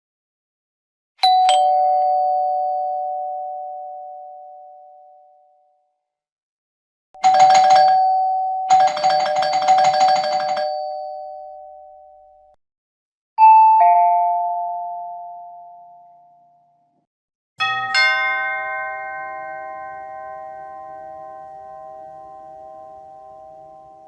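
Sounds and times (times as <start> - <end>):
two-note ding-dong chime: 1.2 - 5.4
rattling doorbell ring: 7.2 - 8.0, 8.7 - 11.3.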